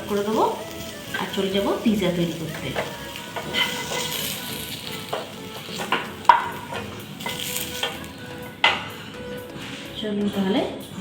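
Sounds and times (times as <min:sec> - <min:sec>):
vegetables sizzling in a frying pan: 0:00.0 - 0:09.8
utensil knocking against pan: 0:05.1 - 0:08.9.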